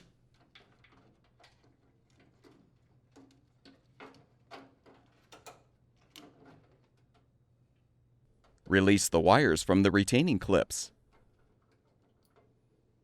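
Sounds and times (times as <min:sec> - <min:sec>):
faint plastic clicks and knocks: 0:00.0 - 0:08.7, 0:11.1 - 0:12.8.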